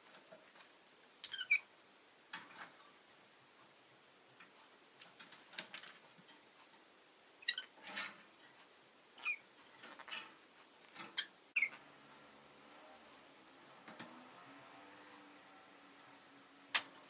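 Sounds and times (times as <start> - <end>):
lovebirds chirping and squeaking: 1.2 - 1.7, 7.4 - 8.1, 9.2 - 11.8.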